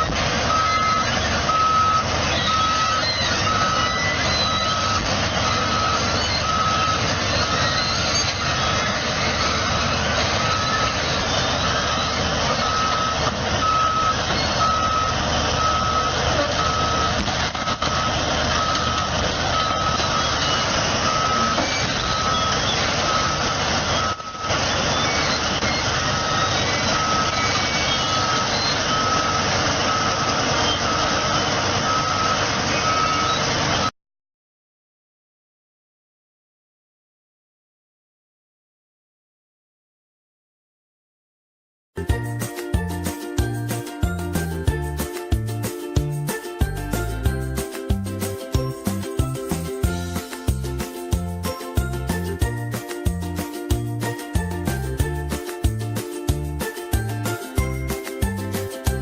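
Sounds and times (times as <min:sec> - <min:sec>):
heavy machine working: 0:00.0 - 0:33.9
reversing alarm beeping: 0:00.0 - 0:33.9.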